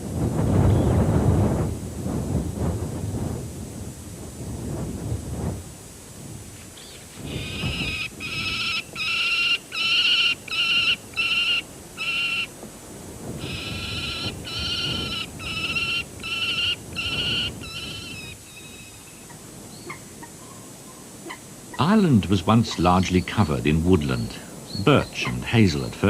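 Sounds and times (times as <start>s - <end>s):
falcon harsh calls: 7.3s - 12.5s, 13.4s - 18.9s.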